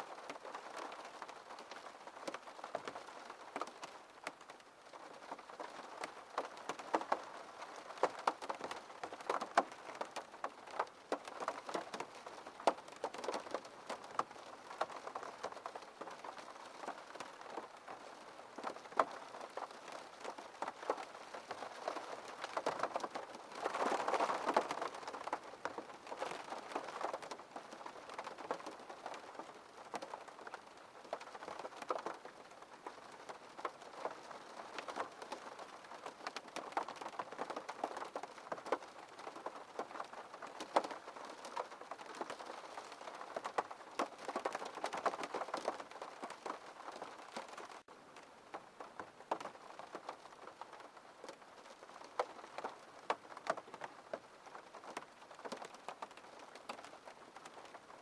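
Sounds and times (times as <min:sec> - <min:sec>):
rainfall hiss: 0:00.0 - 0:58.0.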